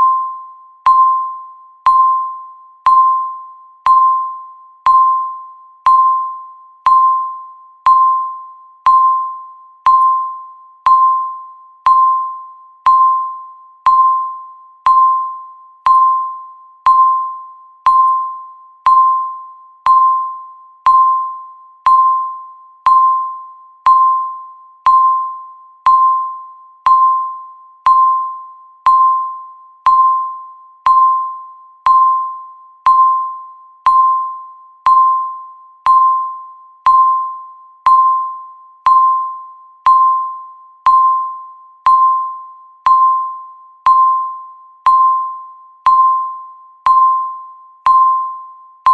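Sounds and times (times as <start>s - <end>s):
countdown timer beeps: 0.0s - 48.9s.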